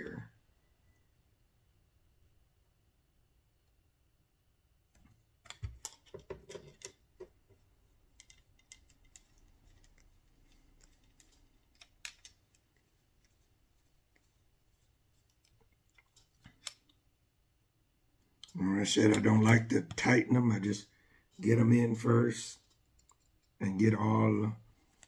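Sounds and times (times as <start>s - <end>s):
small hardware clicking and rattling: 8.1s - 13.4s.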